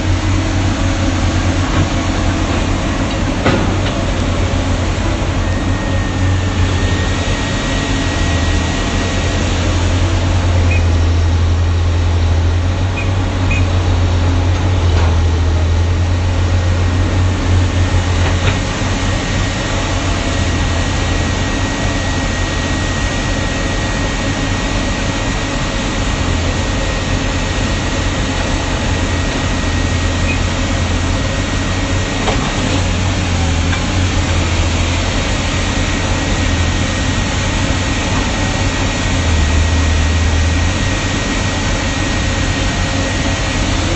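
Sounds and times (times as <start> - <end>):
diesel engine running: 0.0 - 43.9
faint high whine: 4.2 - 11.3.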